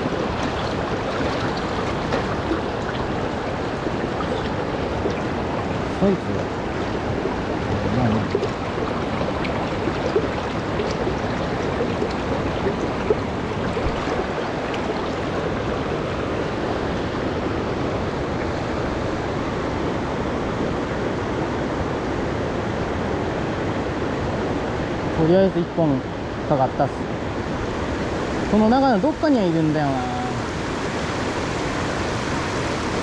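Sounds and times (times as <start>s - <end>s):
river current rushing: 0.0s - 21.6s.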